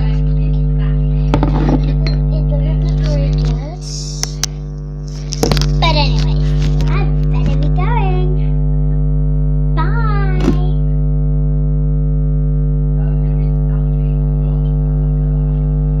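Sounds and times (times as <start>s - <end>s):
electrical mains hum: 0.0s - 16.0s
brief voice: 3.8s - 4.4s.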